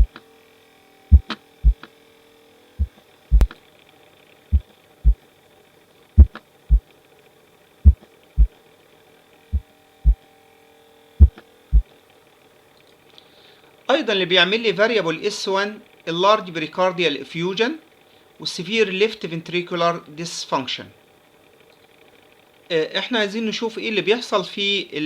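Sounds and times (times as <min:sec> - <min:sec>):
faint steady hum: 0:00.0 - 0:25.0
heartbeat through stethoscope: 0:01.1 - 0:01.8, 0:02.8 - 0:03.5, 0:04.5 - 0:05.2, 0:06.2 - 0:06.4, 0:11.2 - 0:11.8.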